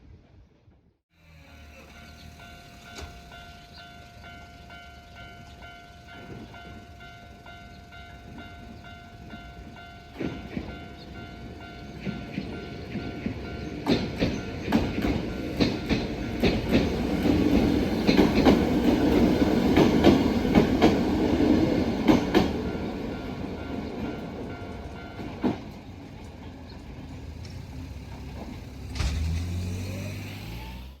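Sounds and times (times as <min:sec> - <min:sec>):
electric train passing: 0:01.1 - 0:31.0
two-tone electronic warning bell: 0:01.4 - 0:13.7
wheels clicking over rail joints: 0:01.8 - 0:29.7.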